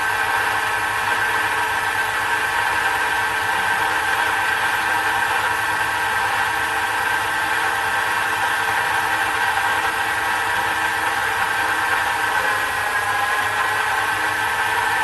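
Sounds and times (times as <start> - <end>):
metal lathe running: 0.0 - 15.0.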